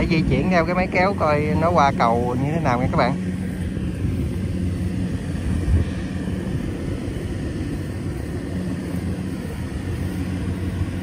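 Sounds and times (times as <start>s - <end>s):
tractor engine droning: 0.0s - 11.0s.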